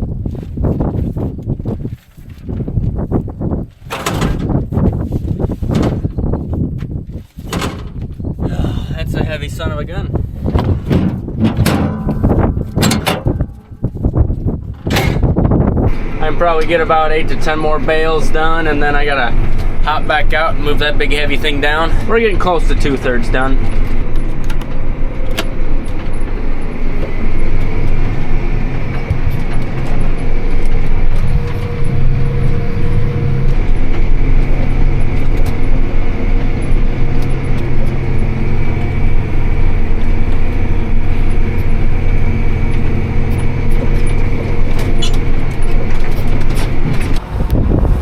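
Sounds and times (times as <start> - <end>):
tractor engine under load: 0.3 - 48.0
thin steady whine: 15.6 - 47.2.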